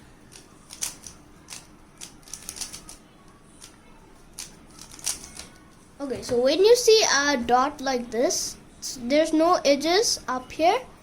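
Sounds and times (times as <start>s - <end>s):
puzzle cube clicking: 0.3s - 3.0s, 4.4s - 5.4s.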